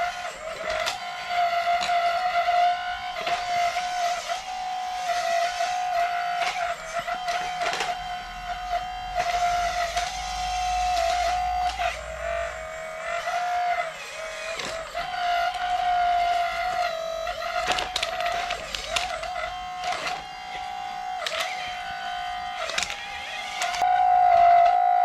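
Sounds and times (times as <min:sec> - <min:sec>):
electric motor whine: 0:00.0 - 0:25.0.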